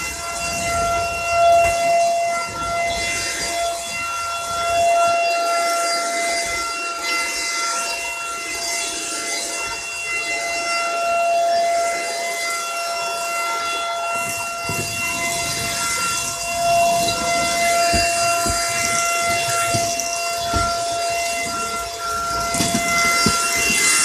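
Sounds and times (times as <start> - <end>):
vacuum cleaner motor whine: 0.0 - 24.0
low knocks and bumps: 14.7 - 24.0.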